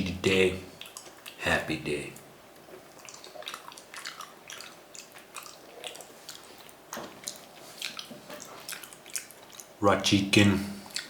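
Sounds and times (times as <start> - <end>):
person chewing: 0.7 - 1.4, 2.6 - 9.8, 10.7 - 11.0.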